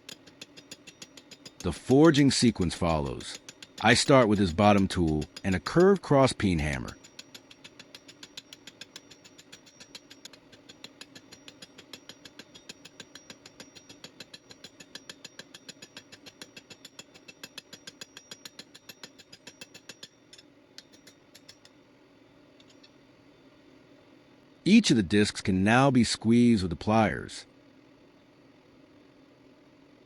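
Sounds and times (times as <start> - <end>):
steady low hum: 0.0 - 17.8, 18.6 - 30.0
hammer blows on hot metal tube: 0.0 - 20.3.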